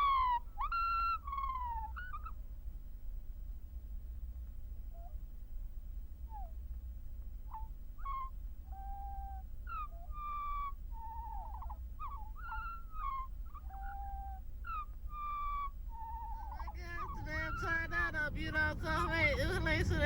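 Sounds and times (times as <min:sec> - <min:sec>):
bird-like hoots and whistles: 0:00.0 - 0:02.4, 0:07.5 - 0:20.0
steady low hum: 0:00.0 - 0:20.0.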